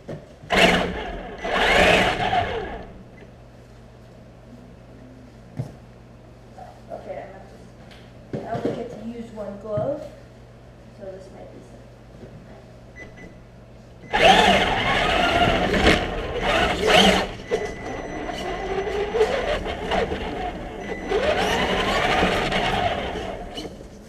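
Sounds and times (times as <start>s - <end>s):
drivetrain rattling and tyre noise: 0.5s - 2.9s, 14.1s - 23.8s
electric motor whining: 0.5s - 3.0s, 14.1s - 23.8s.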